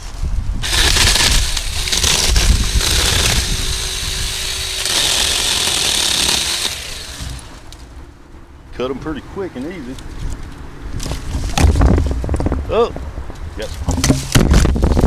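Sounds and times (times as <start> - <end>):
chainsaw cutting stems: 0.6 - 7.8.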